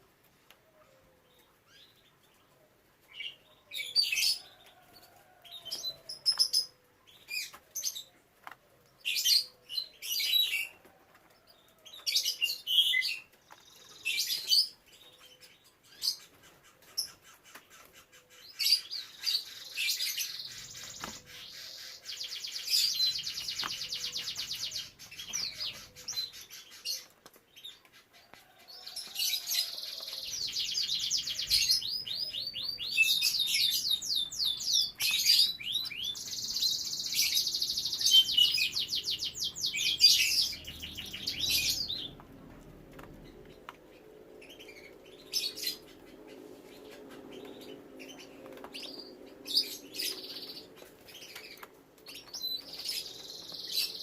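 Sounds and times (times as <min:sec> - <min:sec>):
canary chirps: 0:11.4 - 0:54.0
canary trilling: 0:29.0 - 0:42.2.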